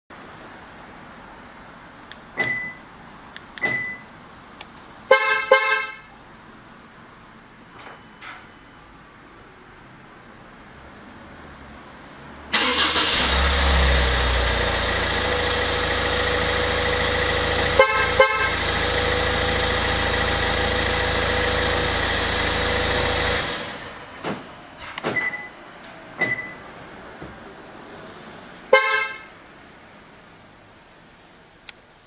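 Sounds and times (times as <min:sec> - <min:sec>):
short beeps: 0:02.4 - 0:02.8, 0:03.6 - 0:04.0, 0:25.2 - 0:25.5, 0:26.3 - 0:26.6
car horn toots: 0:05.1 - 0:06.1, 0:17.6 - 0:18.8, 0:28.7 - 0:29.3
minivan engine running: 0:12.5 - 0:28.8.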